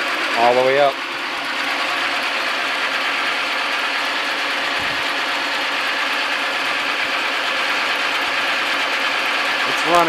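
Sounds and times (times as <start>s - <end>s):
lathe running: 0.0s - 10.0s.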